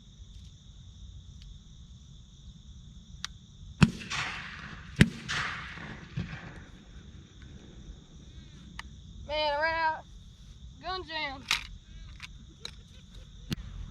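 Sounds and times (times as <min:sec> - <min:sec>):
high drone of insects: 0:00.0 - 0:13.9
shotgun shots: 0:03.8 - 0:07.0
rolling echo: 0:03.8 - 0:08.9.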